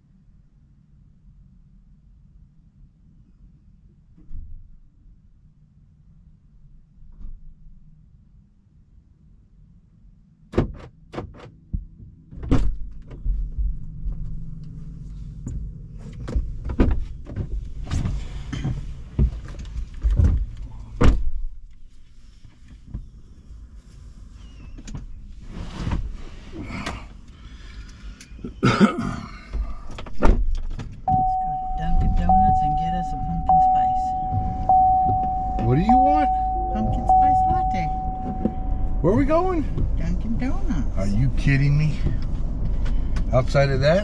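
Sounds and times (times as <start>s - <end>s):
car doors opening and shutting: 10.5s - 13.4s, 15.4s - 21.6s, 24.7s - 28.6s, 29.5s - 40.6s
low rumble: 12.7s - 19.2s, 29.5s - 44.0s.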